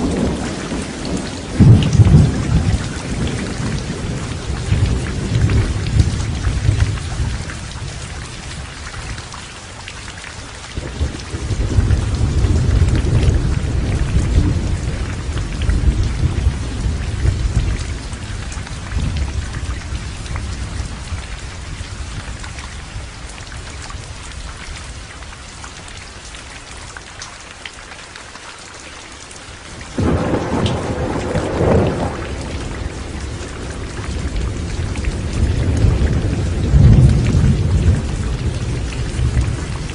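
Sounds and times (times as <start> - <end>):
sharp thunderclap: 0.0 - 7.4, 30.0 - 39.9
rolling thunder: 0.0 - 8.2, 10.8 - 21.2, 30.0 - 39.9
heavy rain falling: 0.0 - 39.9.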